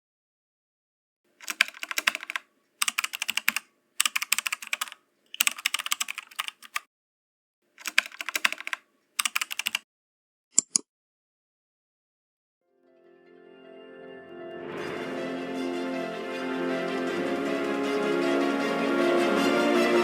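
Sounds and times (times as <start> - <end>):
keyboard key clicks: 7.8 - 9.8, 10.6 - 10.8.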